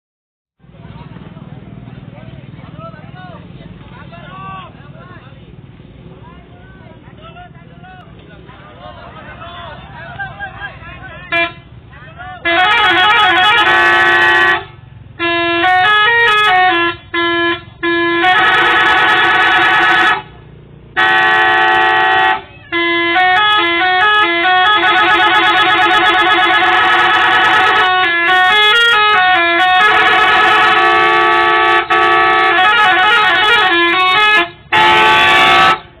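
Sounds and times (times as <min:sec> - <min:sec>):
multi-tone bus horn playing tunes: 0:11.2 - 0:11.8, 0:12.4 - 0:36.0.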